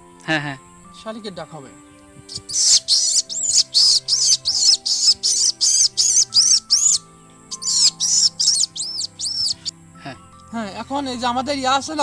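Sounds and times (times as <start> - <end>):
background music: 0.0 - 12.0
person imitating bird chirps: 2.3 - 9.7.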